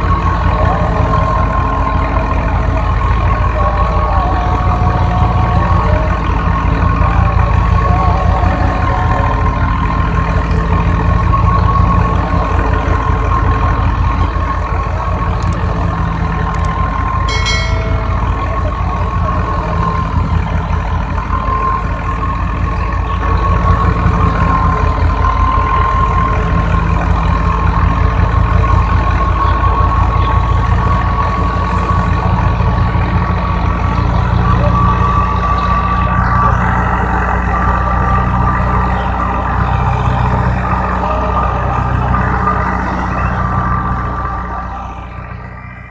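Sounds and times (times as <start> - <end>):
tractor diesel engine running: 0.0 - 45.9
short high-pitched tone: 17.3 - 20.0.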